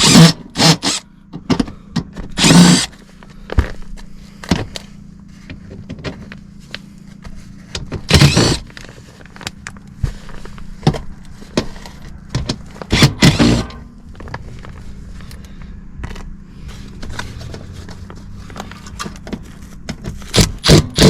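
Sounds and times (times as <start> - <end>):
cordless drill running: 0.0 - 1.0, 2.4 - 2.9, 8.1 - 8.6, 12.9 - 13.7, 20.4 - 21.0
low steady hum: 0.0 - 21.0.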